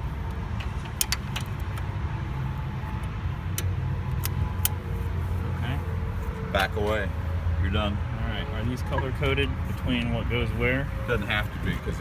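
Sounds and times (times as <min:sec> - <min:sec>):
tractor diesel engine idling: 0:00.0 - 0:12.0
hydraulic coupler metallic clicks: 0:00.3 - 0:01.9, 0:03.0 - 0:04.8.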